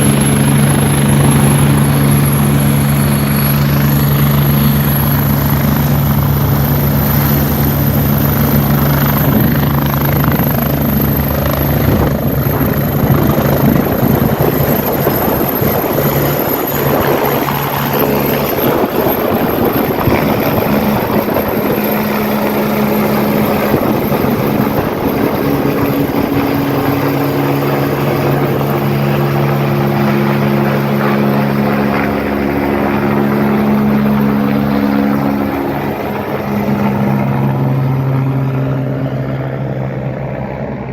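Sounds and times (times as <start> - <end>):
helicopter rotor beat: 0.0 - 40.9
helicopter turbine whine: 0.0 - 40.9.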